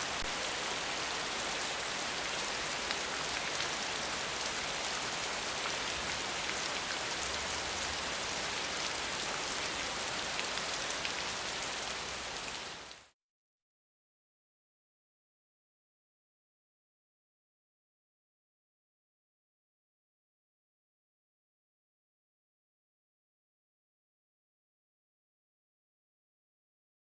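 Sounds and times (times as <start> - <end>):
rain on a hard surface: 0.0 - 13.2.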